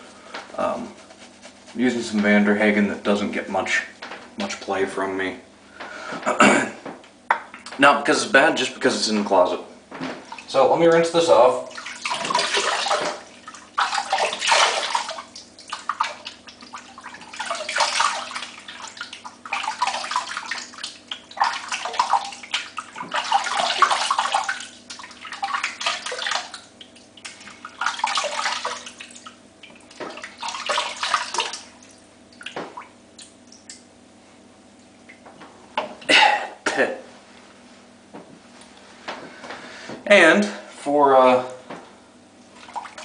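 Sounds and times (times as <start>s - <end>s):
water splashing on face: 10.2s - 33.9s.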